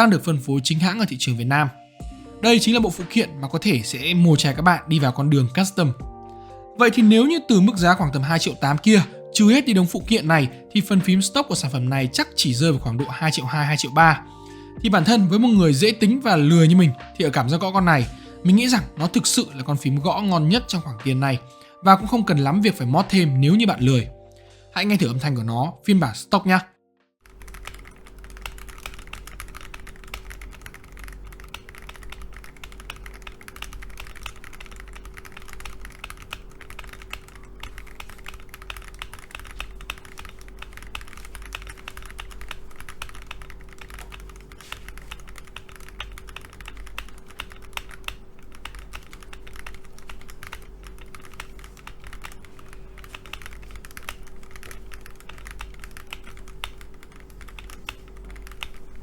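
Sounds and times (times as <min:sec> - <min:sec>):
mechanical keyboard key clicks: 0:27.3 - 0:59.0.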